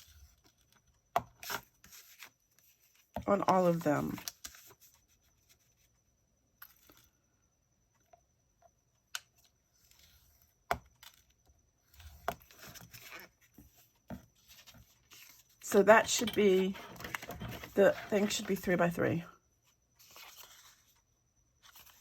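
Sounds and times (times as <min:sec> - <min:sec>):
paper rustling: 0:01.4 - 0:05.9, 0:12.0 - 0:19.0, 0:20.0 - 0:22.0.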